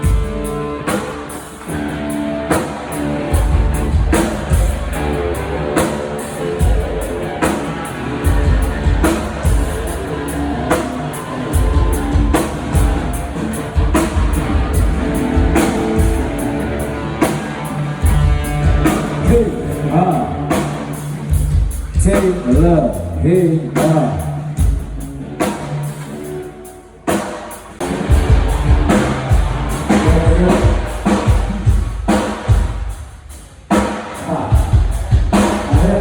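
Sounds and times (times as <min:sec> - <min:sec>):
drum kit steady beat: 0:00.0 - 0:36.0
rock band playing live: 0:00.0 - 0:36.0.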